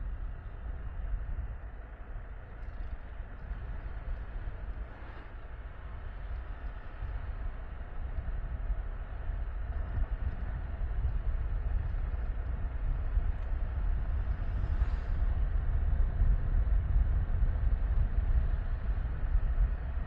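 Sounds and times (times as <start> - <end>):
wind rumble on microphone: 0.0 - 20.0.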